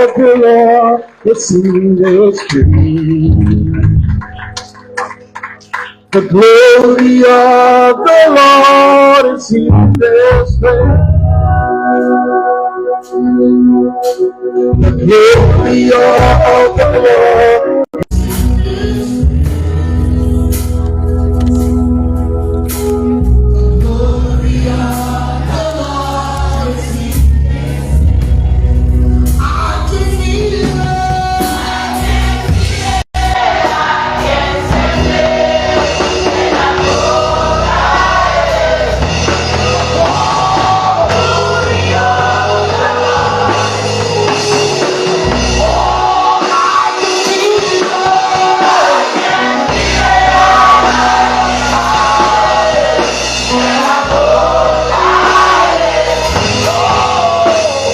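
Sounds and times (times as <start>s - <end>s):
band accompaniment with strong bass: 0.0s - 57.9s
group singing gospel song: 6.2s - 11.0s, 14.8s - 20.5s, 23.6s - 28.3s, 29.4s - 57.9s.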